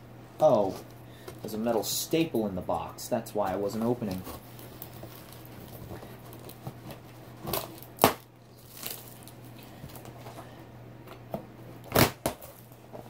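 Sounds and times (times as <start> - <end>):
cardboard flaps scraping and rustling: 3.8 - 7.8
cardboard snapping: 4.1 - 10.1, 11.8 - 12.6.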